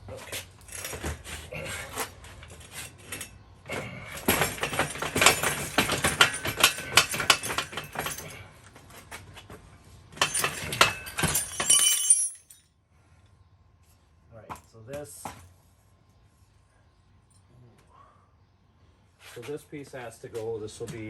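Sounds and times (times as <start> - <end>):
bicycle chain rattling and clinking: 4.0 - 8.5, 10.1 - 12.7.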